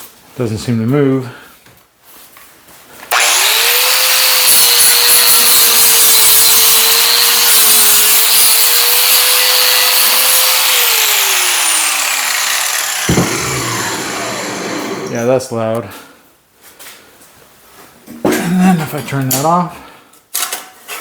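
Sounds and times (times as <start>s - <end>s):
grinder winding down whine: 3.1s - 15.5s
angle grinder grinding steel: 3.1s - 15.8s.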